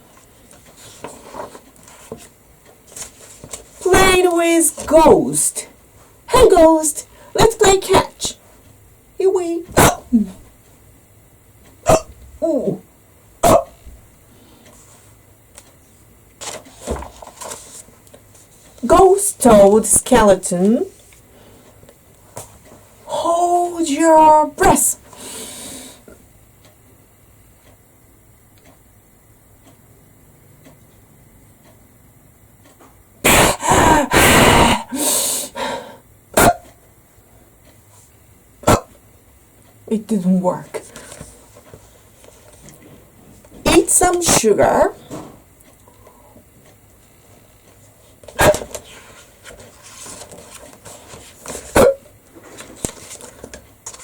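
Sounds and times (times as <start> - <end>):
person hiccuping: 9.6 - 10.5, 11.8 - 12.8, 13.4 - 13.8, 33.2 - 35.0, 36.3 - 36.8, 38.6 - 39.0, 51.7 - 52.1.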